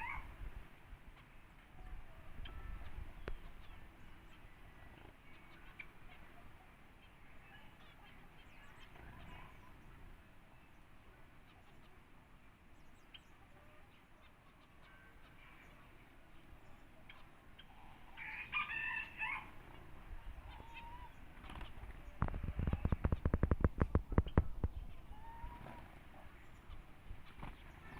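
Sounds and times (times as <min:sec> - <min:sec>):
faint bird chirps: 0:01.2 - 0:27.9
rooster crowing: 0:18.2 - 0:19.5.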